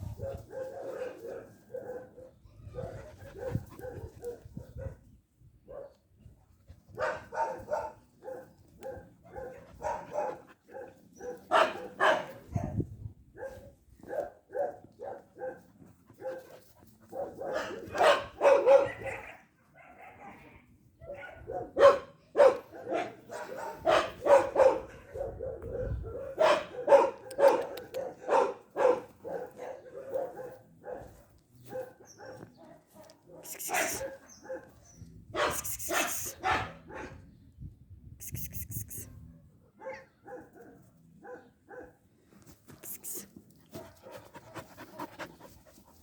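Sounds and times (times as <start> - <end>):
dog barking: 0.2 - 5.0, 5.7 - 6.0, 6.9 - 12.8, 13.4 - 37.3, 38.8 - 42.1.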